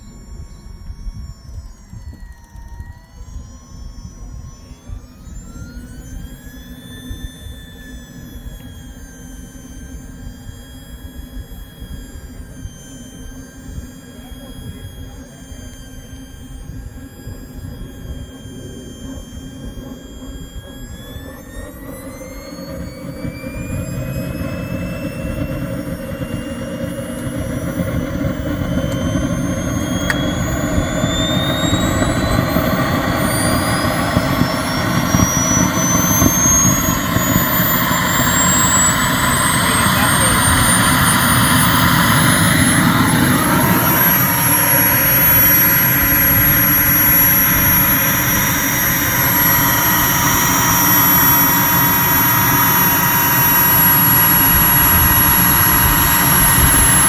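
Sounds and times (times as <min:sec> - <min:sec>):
jet turbine whine: 0:00.0 - 0:57.0
rushing exhaust: 0:03.1 - 0:57.0.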